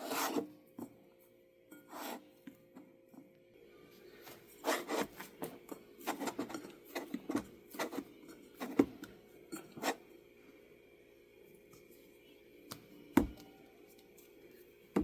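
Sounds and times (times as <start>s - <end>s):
dough rubbing against surface: 0.0s - 0.5s, 1.8s - 2.4s, 4.1s - 9.0s.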